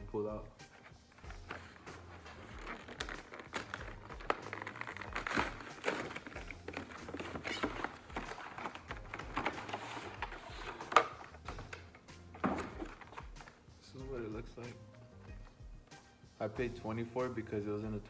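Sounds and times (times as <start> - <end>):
plastic and cardboard crinkling: 0.6 - 14.7.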